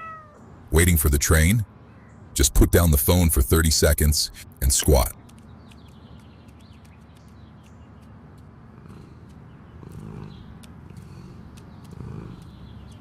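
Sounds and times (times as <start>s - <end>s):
cat purring: 8.7s - 13.0s.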